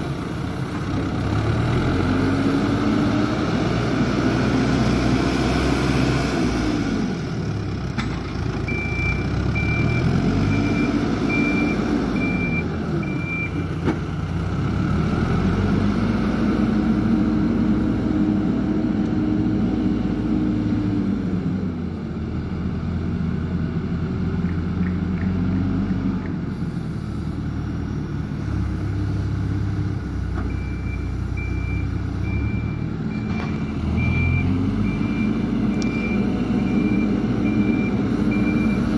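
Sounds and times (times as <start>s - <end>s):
heavy vehicle engine revving: 0.0s - 7.8s, 8.4s - 38.9s
backup alarm beeping: 30.5s - 38.9s.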